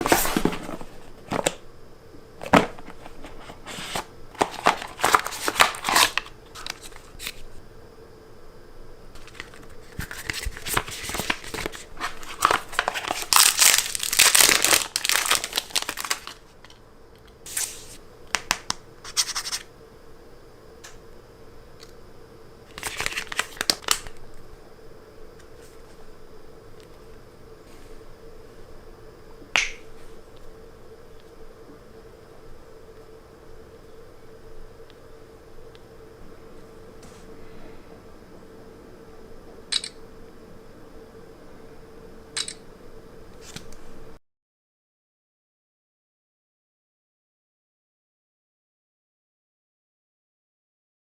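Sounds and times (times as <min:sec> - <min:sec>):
box handling clicks and knocks: 0:02.4 - 0:06.0
plastic wrap tearing and crinkling: 0:03.4 - 0:06.9, 0:09.2 - 0:16.6, 0:22.7 - 0:24.2.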